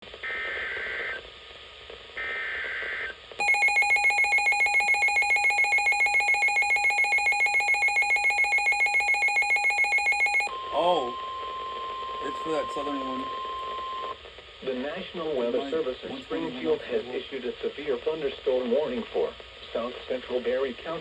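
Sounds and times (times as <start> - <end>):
rapid pulsing alarm beep: 3.4 - 14.1.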